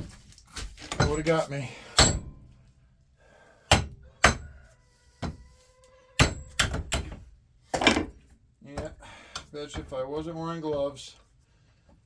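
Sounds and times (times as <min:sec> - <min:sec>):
hammer striking metal: 0:02.0 - 0:02.4, 0:06.2 - 0:07.1.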